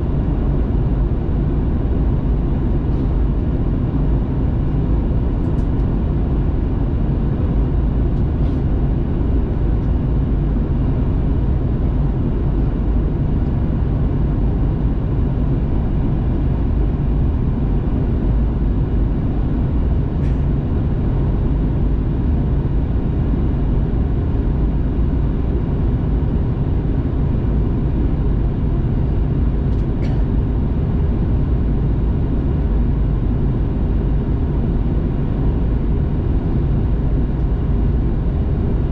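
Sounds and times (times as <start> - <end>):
airplane cabin drone: 0.0 - 38.9.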